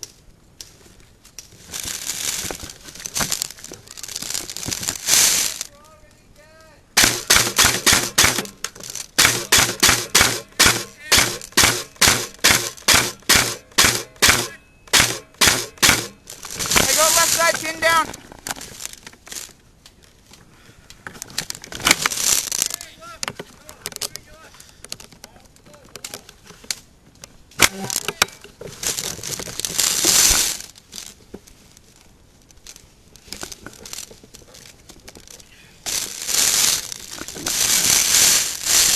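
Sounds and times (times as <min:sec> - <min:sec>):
rustling and crinkling: 0:00.0 - 0:06.3, 0:07.1 - 0:14.1, 0:15.0 - 0:38.9
airsoft gun cracks: 0:07.0 - 0:16.2.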